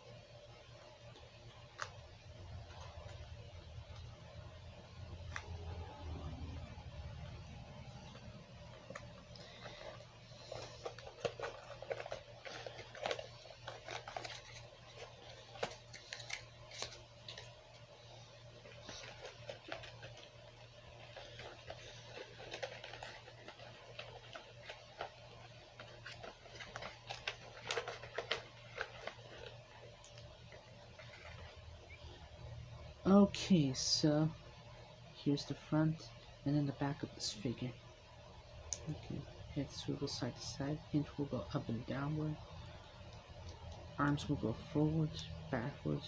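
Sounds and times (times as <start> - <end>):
packaging rustling and clicking: 8.1 - 17.9, 18.6 - 31.6.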